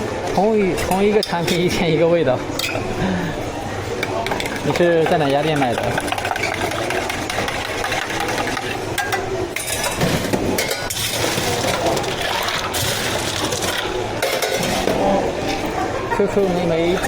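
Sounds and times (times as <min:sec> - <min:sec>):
cups and utensils clinking: 0:03.9 - 0:17.0.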